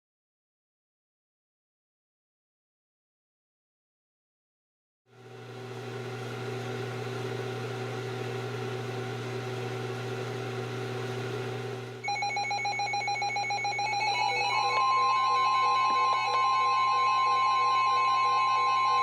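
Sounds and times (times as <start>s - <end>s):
rapid pulsing alarm beeps: 12.0s - 19.0s
steady high tone: 12.0s - 19.0s.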